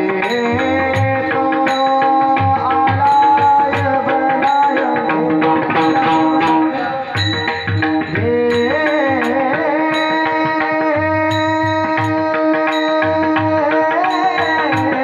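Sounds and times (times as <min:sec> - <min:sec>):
drum strokes: 0:00.0 - 0:15.0
small cymbal clashes: 0:05.8 - 0:10.4.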